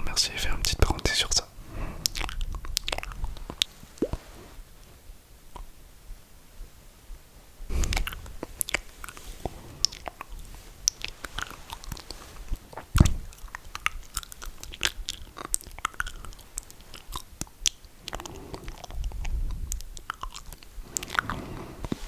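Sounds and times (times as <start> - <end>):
wet mouth clicks and lip smacks: 2.0 - 4.4, 5.5 - 5.7, 7.8 - 22.0
low rush of air: 7.6 - 13.4
heavy thump: 12.9 - 13.3.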